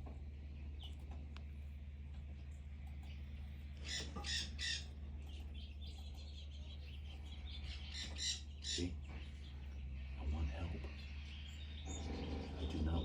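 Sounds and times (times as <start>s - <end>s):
parrots squawking: 3.7s - 5.1s, 7.4s - 13.0s.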